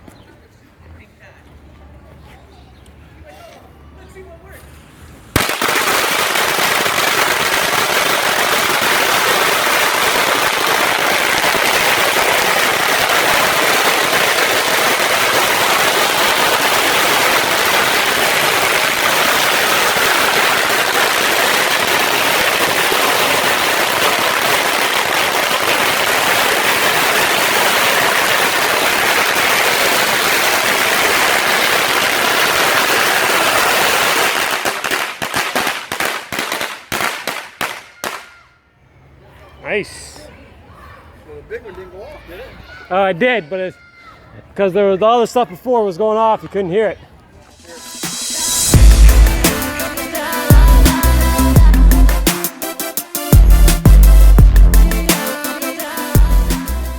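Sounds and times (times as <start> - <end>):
firecrackers banging rapidly: 5.3 - 38.3, 47.6 - 56.8.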